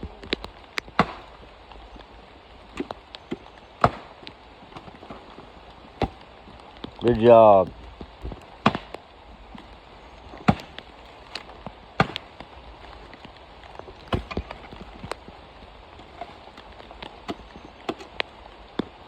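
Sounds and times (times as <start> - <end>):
rain hiss: 0.0 - 19.0
tools splitting coconut shells: 6.0 - 6.3, 14.0 - 15.1, 16.0 - 18.3.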